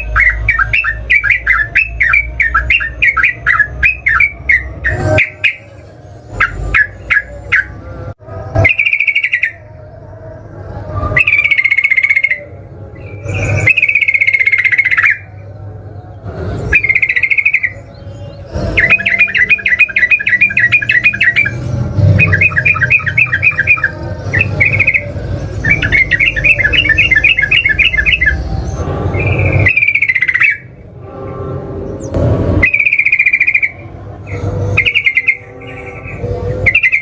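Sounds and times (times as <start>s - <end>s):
bulbul singing rapid notes: 0.0s - 9.8s, 11.2s - 15.5s, 16.4s - 30.8s, 31.9s - 37.0s
low hum: 1.8s - 36.7s.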